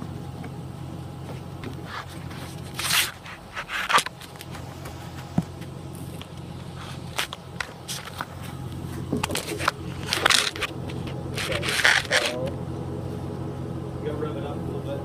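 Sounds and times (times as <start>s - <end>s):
truck engine idling: 0.0s - 15.0s
loud scraping and crunching: 1.2s - 13.2s.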